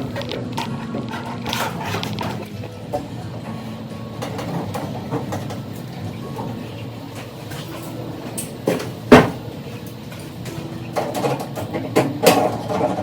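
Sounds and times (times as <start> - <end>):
hoses scraping and clunking: 0.0 - 13.0
sharp loud knock: 9.1 - 9.4.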